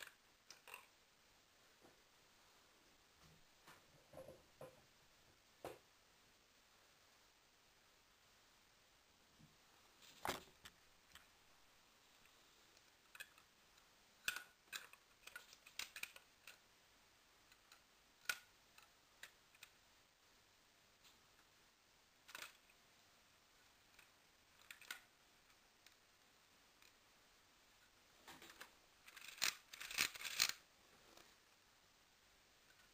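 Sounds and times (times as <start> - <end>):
plastic toy clicks and clacks: 0.0 - 0.9, 13.0 - 13.5, 14.2 - 16.6, 17.4 - 19.8, 22.2 - 22.8, 23.8 - 25.2, 28.5 - 30.6.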